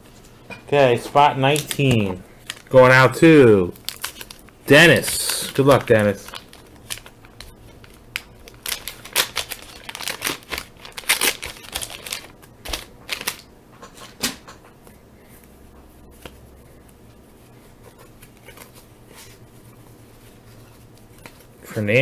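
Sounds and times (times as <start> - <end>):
cards being handled and flipped: 1.0 - 2.7, 3.8 - 14.8, 17.6 - 21.6
wax paper pack tearing: 1.5 - 13.5.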